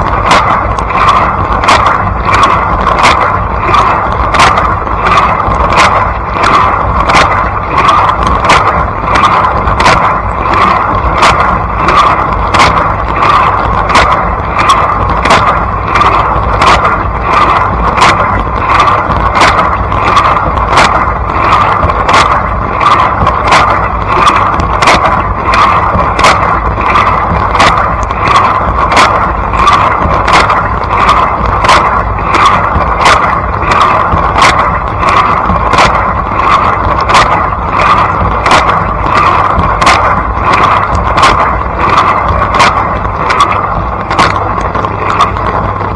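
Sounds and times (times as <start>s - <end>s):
regular sharp tick: 0.0s - 45.9s.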